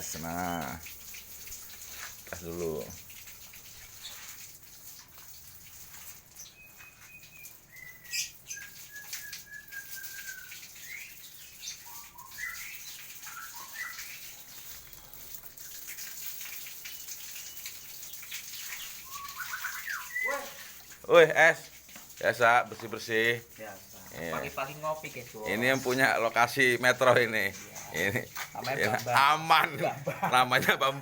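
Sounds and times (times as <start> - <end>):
songbirds chirping and whistling: 6.3 - 15.1, 16.8 - 20.8.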